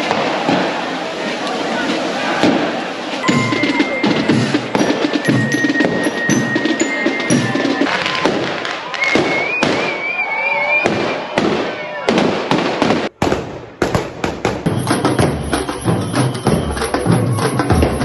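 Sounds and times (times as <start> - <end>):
firecrackers cracking: 0.0 - 10.2, 10.8 - 18.0
crowd voices: 0.0 - 18.0
procession music: 3.2 - 8.8, 14.7 - 18.0
wavering high whistle: 8.8 - 11.3, 14.7 - 18.0.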